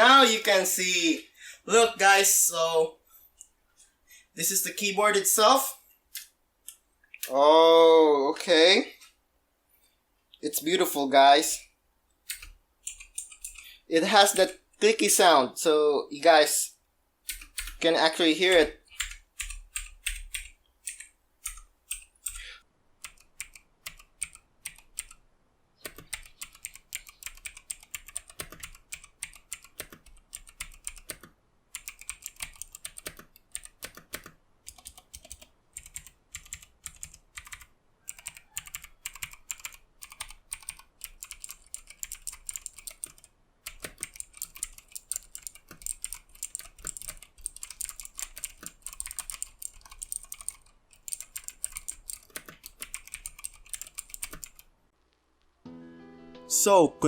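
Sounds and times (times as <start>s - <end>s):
mechanical keyboard typing: 12.3s - 13.6s, 17.3s - 17.9s, 18.5s - 22.4s, 23.0s - 25.2s, 25.8s - 54.7s.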